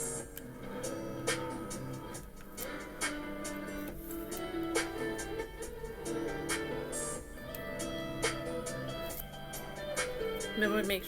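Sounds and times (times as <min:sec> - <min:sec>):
music with sustained notes: 0:00.0 - 0:11.0.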